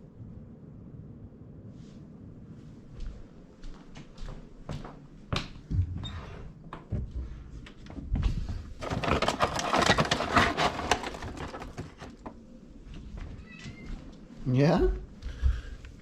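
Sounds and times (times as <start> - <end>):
dry pet food rattling into bowl: 8.8 - 12.3.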